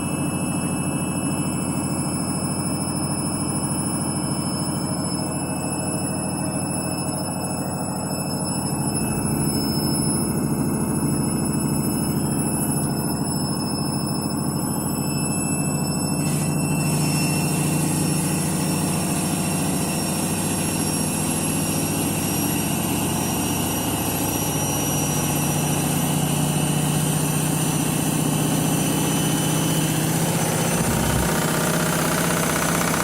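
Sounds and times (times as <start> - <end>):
high motor whine: 0.0 - 33.0
washing machine drum hum: 29.8 - 33.0.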